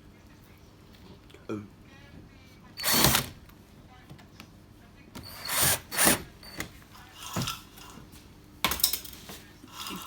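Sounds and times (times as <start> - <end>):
power drill driving screws: 2.8 - 3.4, 5.2 - 6.6.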